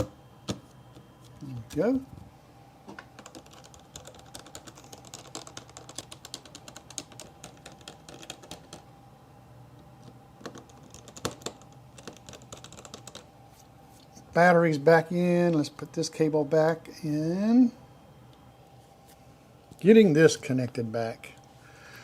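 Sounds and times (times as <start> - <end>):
laptop parts clicking: 3.2 - 8.8, 10.0 - 13.2.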